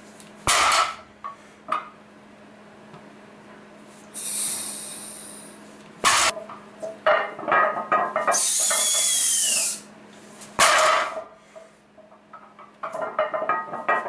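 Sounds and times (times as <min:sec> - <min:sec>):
metal scraping hiss: 0:04.2 - 0:06.3, 0:08.3 - 0:09.8
metal equipment clanking: 0:06.1 - 0:08.5
falling squeal: 0:08.3 - 0:09.8.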